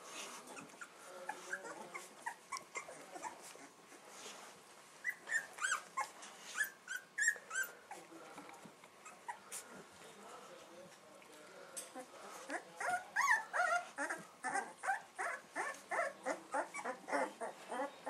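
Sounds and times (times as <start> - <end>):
puppies whimpering and squealing: 0.2 - 4.3, 5.0 - 8.1, 8.9 - 9.9, 12.0 - 18.0.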